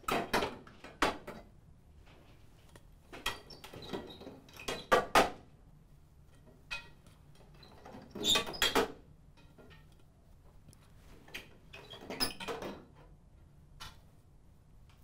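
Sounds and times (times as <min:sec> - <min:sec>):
lamp tubes knocking and clattering: 0:06.4 - 0:07.2.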